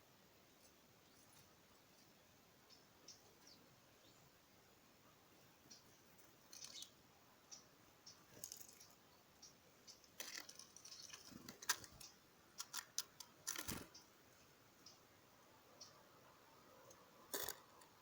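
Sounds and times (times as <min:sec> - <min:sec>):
birds pecking at food: 0:05.6 - 0:14.2.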